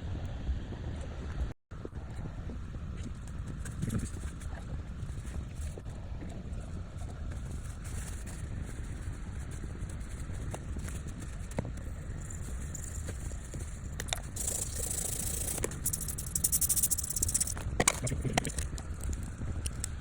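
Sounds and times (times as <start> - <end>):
low hum: 0.0 - 20.0
fast scratchy scraping: 7.3 - 18.8
tools clicking on circuit board: 14.0 - 18.7.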